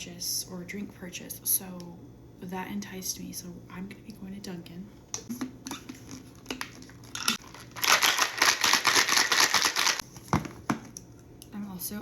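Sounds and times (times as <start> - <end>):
ice cubes clinking in glass: 6.6 - 10.0.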